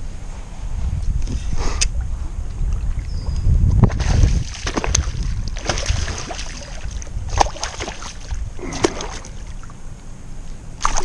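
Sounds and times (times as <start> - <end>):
wind rumbling on microphone: 0.0 - 11.0
water moving around kayak: 1.4 - 11.0.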